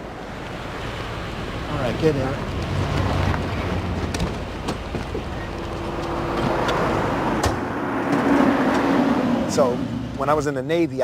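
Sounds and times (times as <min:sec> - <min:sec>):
street traffic: 0:00.0 - 0:11.0.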